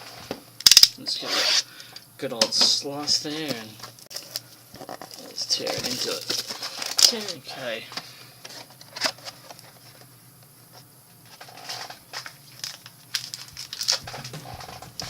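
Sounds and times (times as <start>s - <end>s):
plastic wrap crinkling and tearing: 4.1s - 7.4s, 11.3s - 15.0s.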